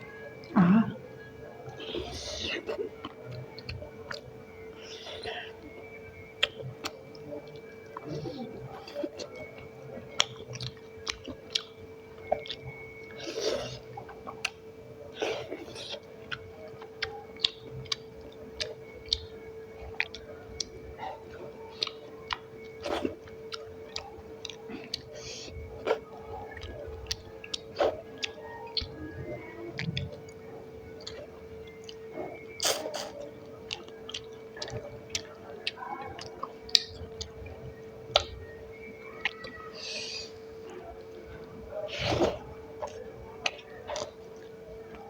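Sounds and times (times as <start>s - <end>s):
chewing and mouth smacking: 0.0s - 45.0s
steady hum: 0.0s - 45.0s
wet mouth clicks and smacks: 31.8s - 37.3s.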